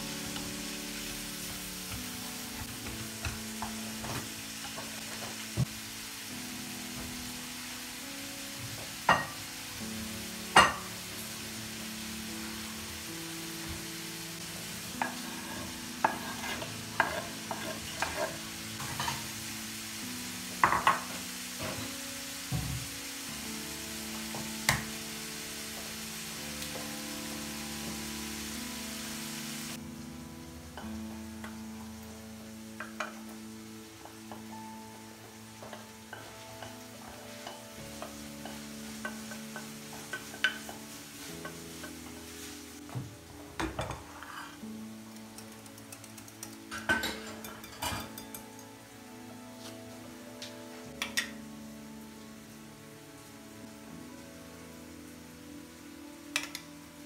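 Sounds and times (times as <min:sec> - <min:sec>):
light sizzle: 0:00.0 - 0:57.0
soft background music: 0:00.0 - 0:57.0
utensil stirring and clinking: 0:15.0 - 0:19.2.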